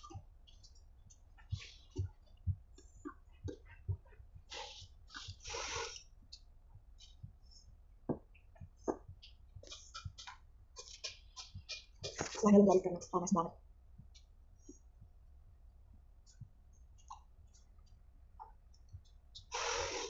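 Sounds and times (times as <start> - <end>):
wet chewing and mouth smacks: 4.5 - 6.4, 8.5 - 12.4, 17.0 - 19.6
hissing slurp: 19.5 - 20.0.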